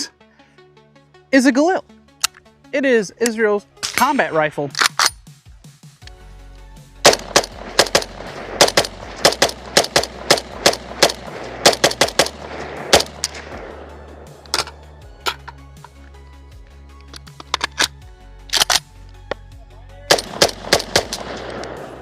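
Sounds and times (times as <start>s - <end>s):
rifle shots: 7.0s - 15.4s, 20.1s - 22.0s.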